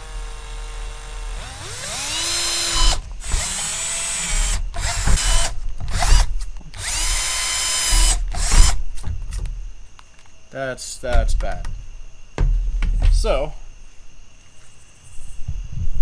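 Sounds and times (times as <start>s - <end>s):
power drill whining: 0.0s - 8.8s.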